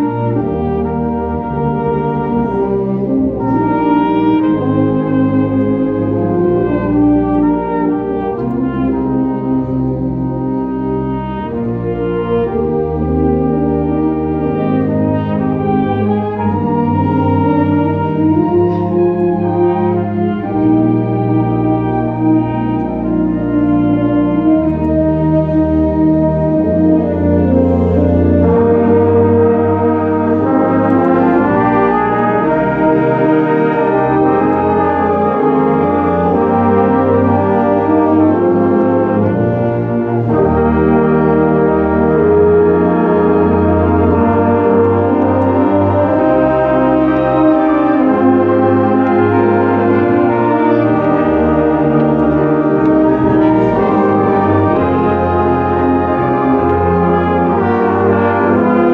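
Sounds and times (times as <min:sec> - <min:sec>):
brass band playing held chords: 0:00.0 - 0:58.9.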